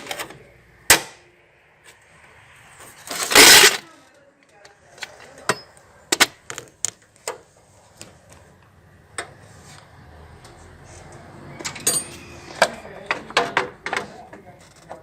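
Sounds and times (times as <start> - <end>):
low background noise: 0.0 - 15.0.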